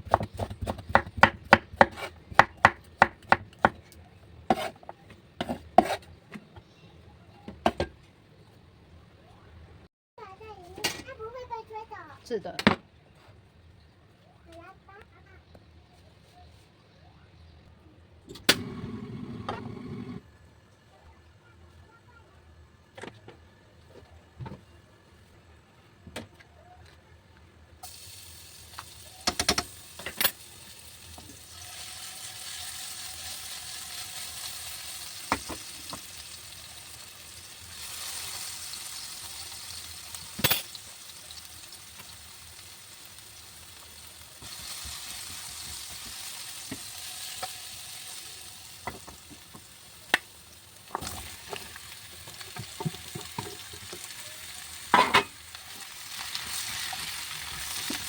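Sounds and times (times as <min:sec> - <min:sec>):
food sizzling in a pan: 0:27.8 - 0:58.0.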